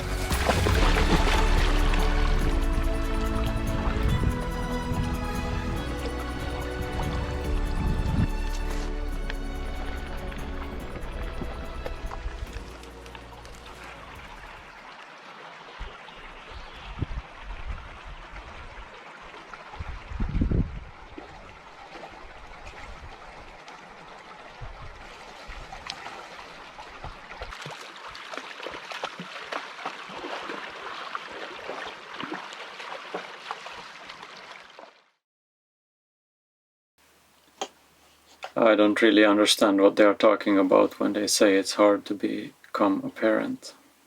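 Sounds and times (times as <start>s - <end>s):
stream gurgling: 0.0s - 35.2s.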